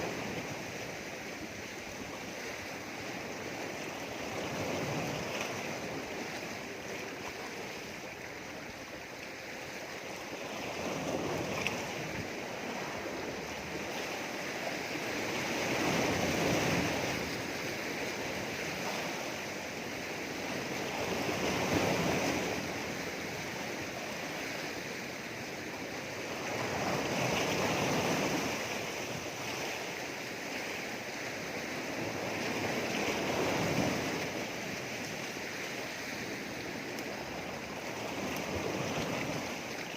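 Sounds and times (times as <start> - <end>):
waves breaking against rocks: 0.0 - 39.9.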